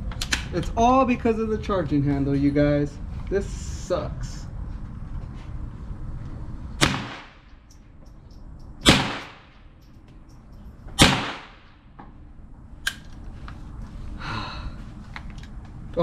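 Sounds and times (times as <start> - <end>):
gunshots: 6.8 - 7.5, 8.8 - 9.6, 11.0 - 11.8.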